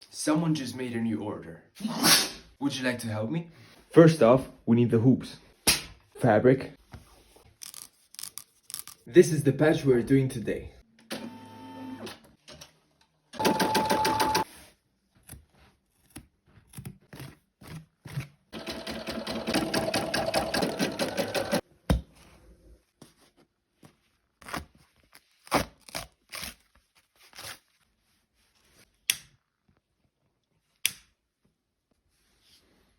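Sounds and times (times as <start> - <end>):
embroidery machine stitching: 13.4 - 14.4, 18.6 - 21.6.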